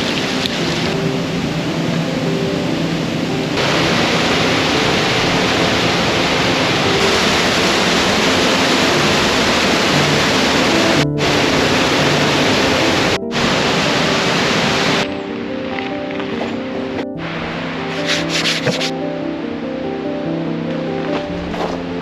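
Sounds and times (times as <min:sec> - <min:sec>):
waterfall rushing over dam: 0:03.5 - 0:15.1, 0:17.2 - 0:19.0.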